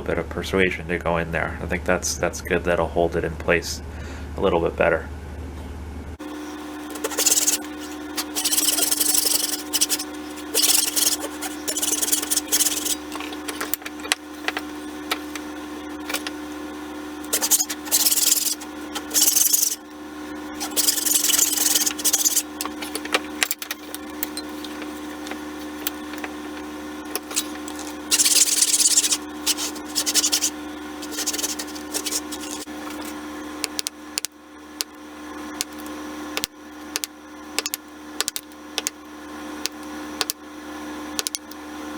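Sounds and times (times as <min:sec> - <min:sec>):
steady low hum: 0:05.0 - 0:41.9
hand rasp scraping wood: 0:06.5 - 0:16.3, 0:17.3 - 0:19.8, 0:20.6 - 0:23.1, 0:27.2 - 0:33.2.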